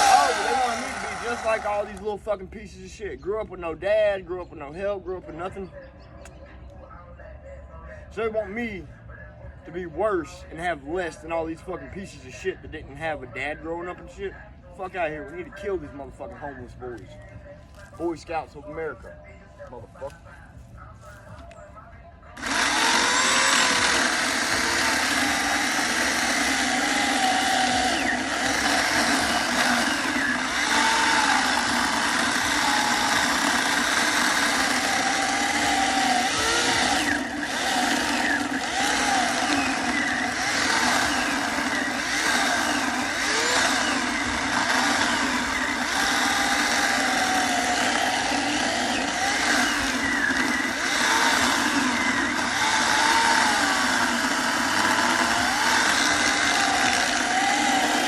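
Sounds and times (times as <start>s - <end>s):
electric chainsaw whining: 0.0s - 2.1s, 22.4s - 58.0s.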